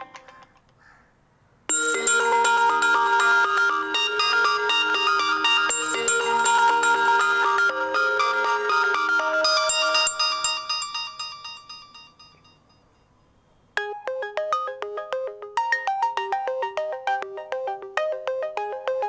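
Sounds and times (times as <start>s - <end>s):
ringtone melody: 1.7s - 12.9s, 13.8s - 19.0s
bright ringtone notes: 1.7s - 13.1s, 13.8s - 19.0s.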